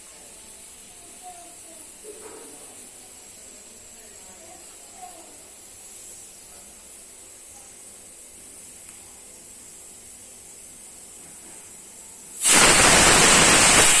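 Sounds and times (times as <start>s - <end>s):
faint steady hiss: 0.0s - 14.0s
pressure cooker steam blast: 12.2s - 14.0s.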